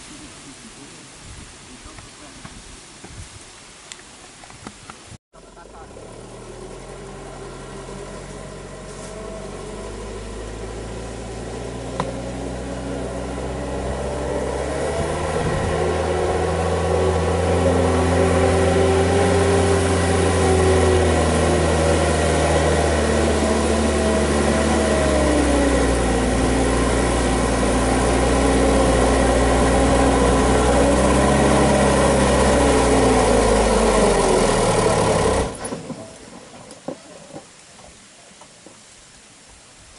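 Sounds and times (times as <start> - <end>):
diesel truck engine labouring: 5.4 - 36.7.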